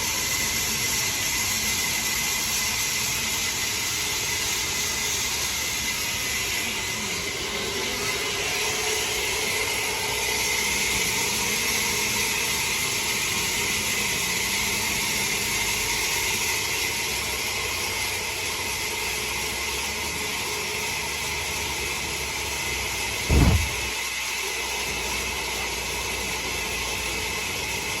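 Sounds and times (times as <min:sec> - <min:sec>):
loud low thud: 0:23.3 - 0:23.9.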